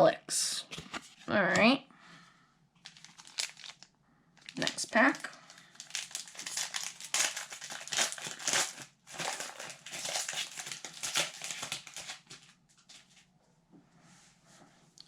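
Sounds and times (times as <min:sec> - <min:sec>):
card pack wrapper crinkling and tearing: 0:02.8 - 0:13.0.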